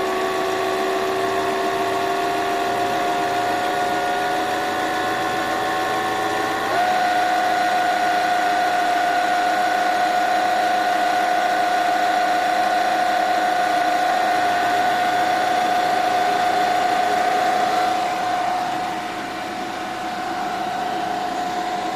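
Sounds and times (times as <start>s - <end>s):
alternator bearing squeal: 0.0s - 21.9s
car engine running: 0.0s - 21.9s.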